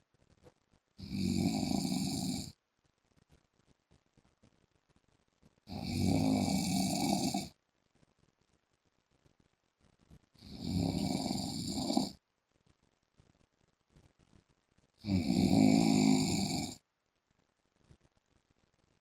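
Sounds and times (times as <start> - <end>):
man snoring: 1.0 - 2.5, 5.7 - 7.5, 10.4 - 12.2, 15.0 - 16.8.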